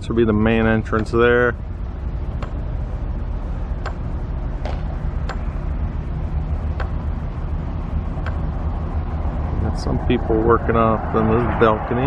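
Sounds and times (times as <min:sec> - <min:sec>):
low rumble of vehicle noise: 0:00.0 - 0:12.0
sharp ticks: 0:02.4 - 0:02.6, 0:03.8 - 0:04.1, 0:05.2 - 0:05.5, 0:06.7 - 0:07.1, 0:08.2 - 0:08.6.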